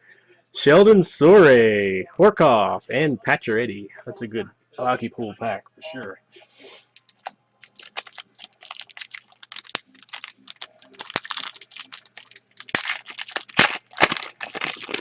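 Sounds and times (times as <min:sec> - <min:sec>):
foil pack crinkling and tearing: 0:07.6 - 0:15.0.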